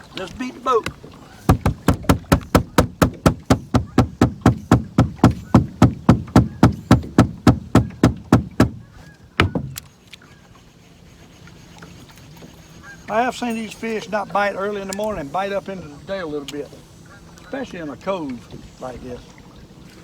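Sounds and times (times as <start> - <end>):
knocks on boat hull: 0.8 - 9.9.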